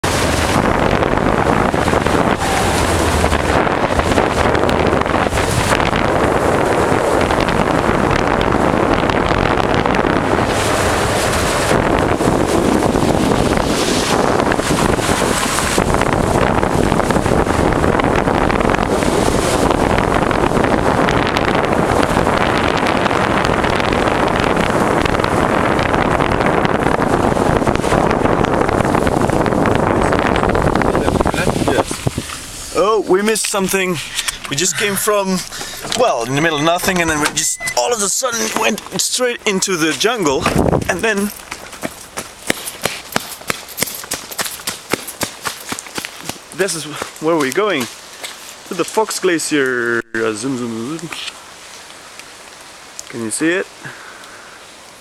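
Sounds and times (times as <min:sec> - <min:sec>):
wind rushing on microphone: 0:00.0 - 0:55.0.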